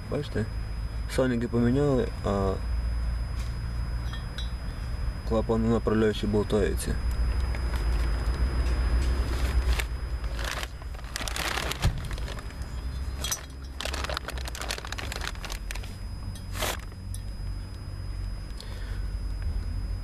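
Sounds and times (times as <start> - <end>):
low rumble: 7.0 - 18.5.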